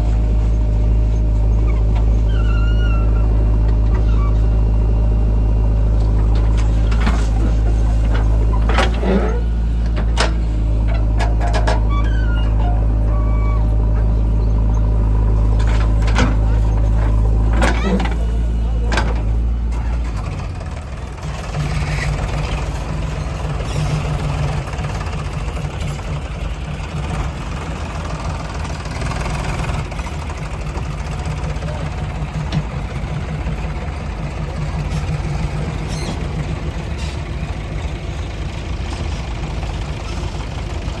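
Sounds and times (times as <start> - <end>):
diesel engine idling: 0.0 - 41.0.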